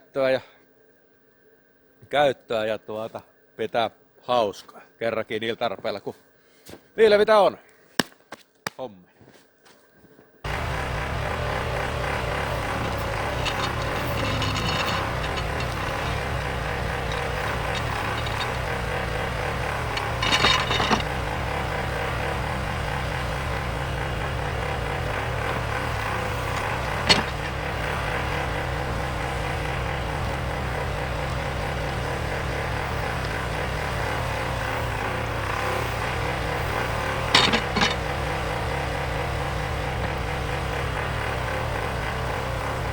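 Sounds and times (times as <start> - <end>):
rattle of knocks: 10.5 - 38.6
loader engine running: 10.5 - 42.9.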